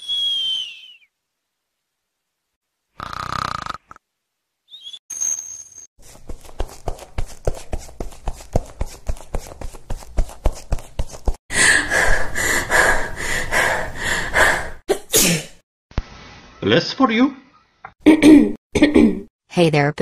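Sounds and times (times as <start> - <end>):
quick footsteps: 6.0 - 11.4.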